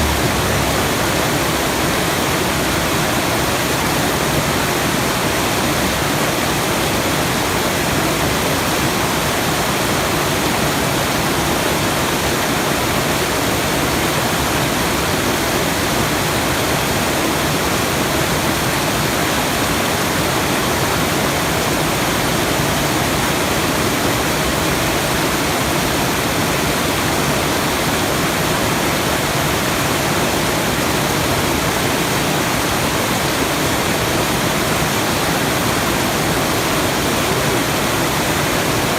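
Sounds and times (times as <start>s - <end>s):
steady rushing noise: 0.0s - 3.0s.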